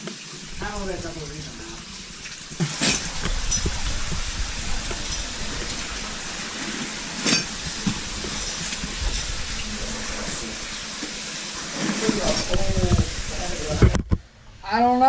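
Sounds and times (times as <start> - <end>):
water falling in a cave: 0.0 - 14.0.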